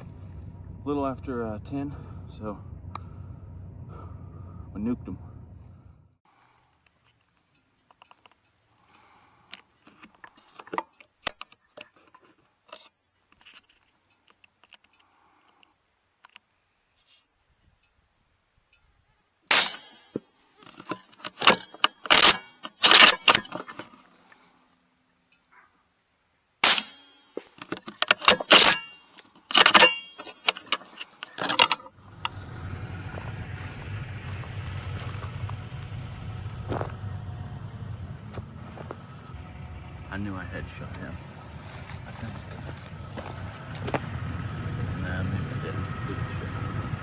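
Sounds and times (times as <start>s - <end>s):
rustling and scraping: 0.0s - 0.6s, 30.2s - 44.5s
atv engine running: 0.0s - 6.2s, 32.0s - 47.0s
gear knocking and rattling: 31.4s - 47.0s.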